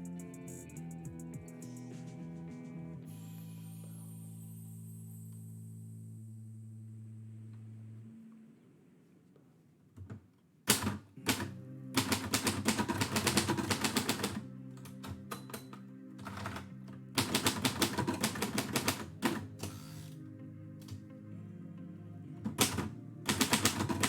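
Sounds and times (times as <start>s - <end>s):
typewriter keys striking: 10.7s - 14.4s, 17.2s - 19.7s, 22.6s - 24.0s.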